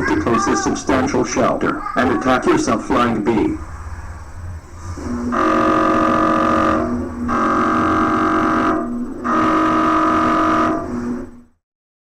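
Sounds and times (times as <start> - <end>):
buzzing electronic data bursts: 2.2 - 11.6.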